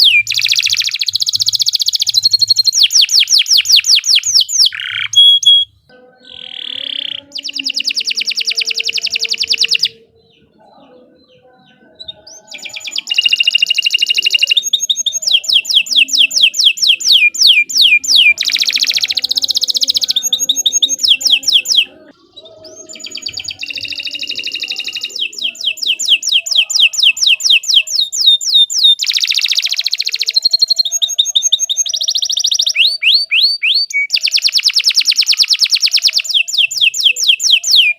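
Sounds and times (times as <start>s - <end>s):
canary trilling: 0.0s - 37.9s.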